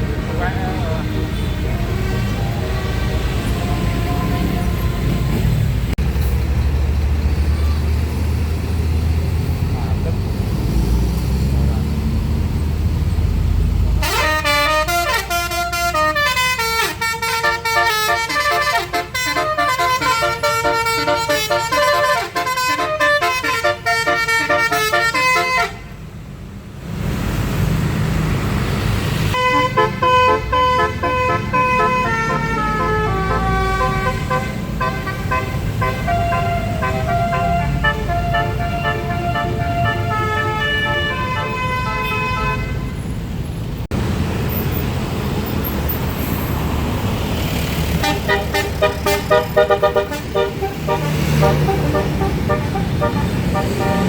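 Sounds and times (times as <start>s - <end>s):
bus engine rumble: 0.0s - 54.0s
multi-note air horn tune: 14.0s - 25.8s, 29.4s - 42.8s, 48.0s - 54.0s.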